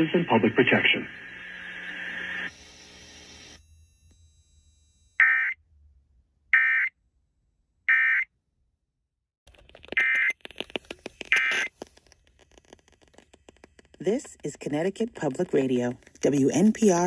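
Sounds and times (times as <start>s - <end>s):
crackly noise: 9.5s - 17.0s.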